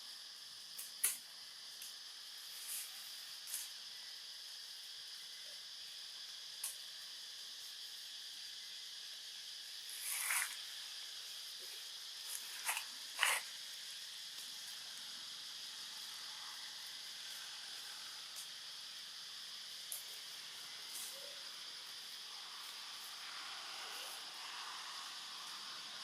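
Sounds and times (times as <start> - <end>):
steady high hiss: 0.0 - 26.0.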